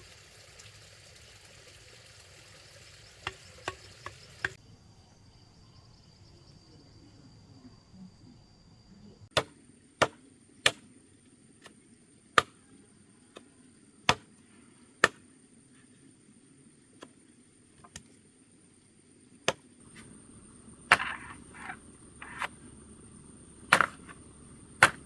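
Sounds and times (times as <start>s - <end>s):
hand tool chopping wood: 9.4s - 10.8s, 12.4s - 12.6s, 14.1s - 14.3s, 20.9s - 22.6s, 23.7s - 24.2s, 24.8s - 25.0s.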